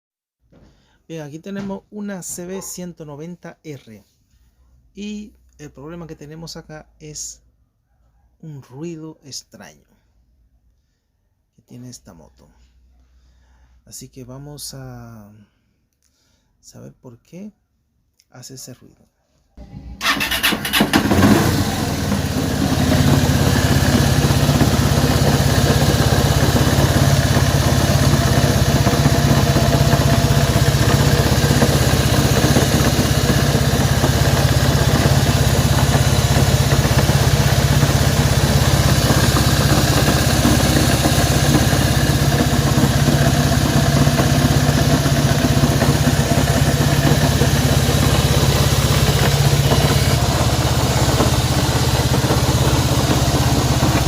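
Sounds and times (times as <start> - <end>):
motorcycle engine idling: 19.6 - 54.0.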